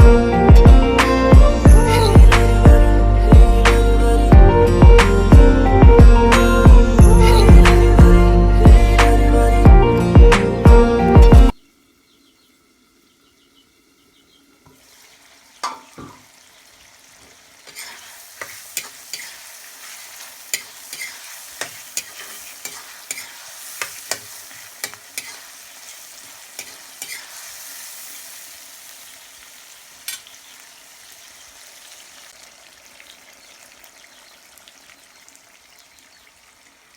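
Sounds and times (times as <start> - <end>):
music track: 0.0 - 11.6
pork sizzling in a pan: 14.7 - 36.9
spatula scraping a pan: 17.6 - 28.4.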